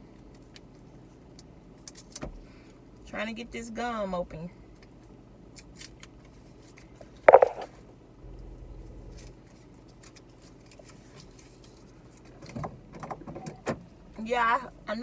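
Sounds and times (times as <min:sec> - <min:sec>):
brief louder knock: 0:07.3 - 0:07.7.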